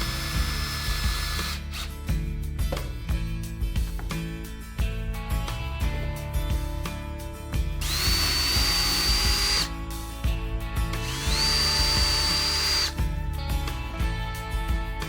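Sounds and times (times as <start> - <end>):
electric drill motor whine: 0.0 - 2.0, 7.8 - 9.8, 11.0 - 13.0
background music: 0.0 - 15.0.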